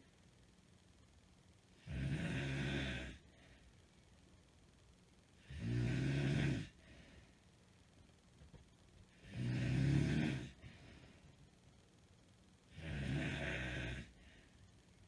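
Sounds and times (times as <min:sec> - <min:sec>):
woman snoring: 0:01.8 - 0:03.2, 0:05.4 - 0:06.8, 0:09.2 - 0:10.6, 0:12.7 - 0:14.2.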